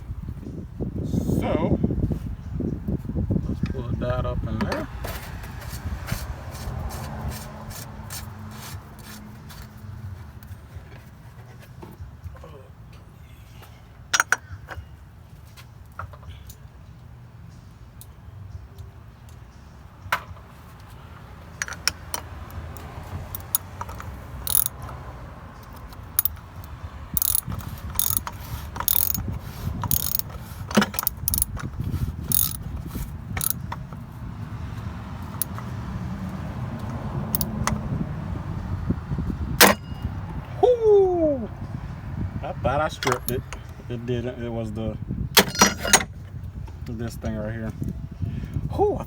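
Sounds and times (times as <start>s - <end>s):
ratchet wrench clicking: 21.6s - 25.0s, 25.6s - 34.0s, 34.8s - 35.7s, 36.8s - 37.8s
metallic clinks: 23.3s - 24.9s, 25.6s - 29.2s, 29.8s - 31.7s, 32.3s - 32.6s, 33.3s - 33.8s, 37.4s - 37.8s, 45.4s - 46.1s.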